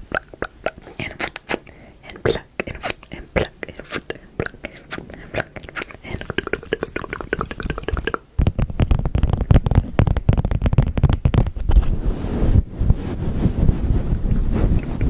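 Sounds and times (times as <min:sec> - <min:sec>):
soft mouth sounds: 0:00.0 - 0:12.0, 0:13.6 - 0:15.0
hands rubbing on microphone: 0:04.7 - 0:15.0.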